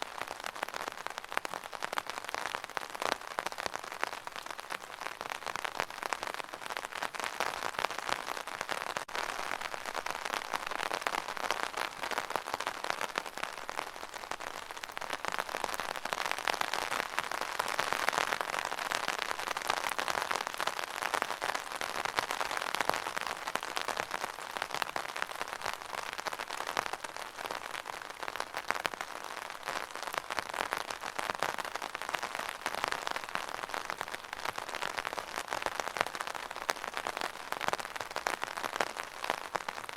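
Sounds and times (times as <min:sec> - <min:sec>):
rain drumming on umbrella: 0:00.0 - 0:39.9.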